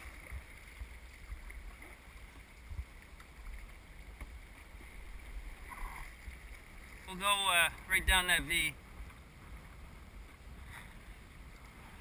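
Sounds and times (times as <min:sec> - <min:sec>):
wind rumble on microphone: 0:00.0 - 0:07.0
river water rushing: 0:00.0 - 0:12.0.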